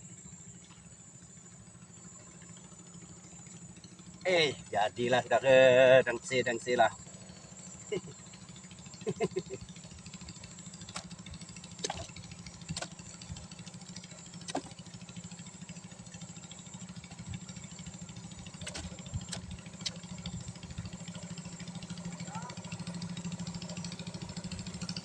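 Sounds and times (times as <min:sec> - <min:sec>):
small engine idling: 0:00.0 - 0:25.0
sharp clicks: 0:18.6 - 0:20.0.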